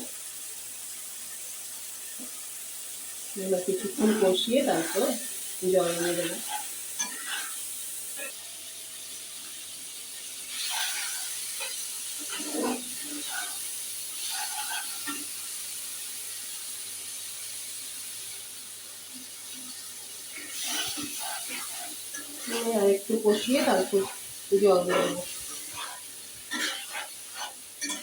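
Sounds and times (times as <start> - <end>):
food sizzling in oil: 0.0 - 28.0
stirring strokes: 3.6 - 7.6, 10.5 - 15.2, 20.3 - 28.0.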